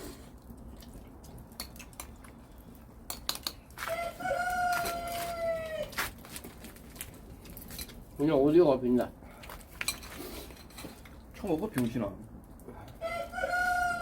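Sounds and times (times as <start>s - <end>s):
rooster crowing: 3.8s - 6.0s, 13.0s - 14.0s.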